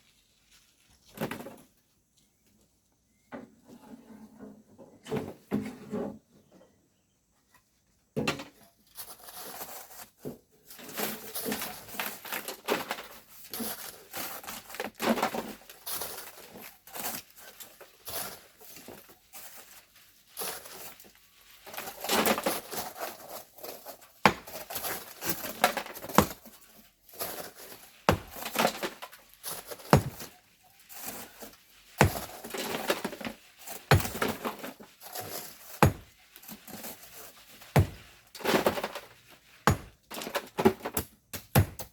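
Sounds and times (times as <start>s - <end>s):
hand tools scraping sand and stone: 8.9s - 41.9s
gritty rushes of sand: 9.0s - 40.3s.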